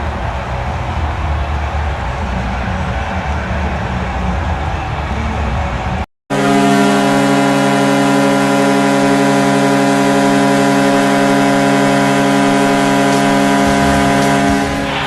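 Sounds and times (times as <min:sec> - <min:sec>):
music: 0:00.0 - 0:06.0, 0:13.1 - 0:15.0
arena goal horn blast: 0:06.3 - 0:15.0.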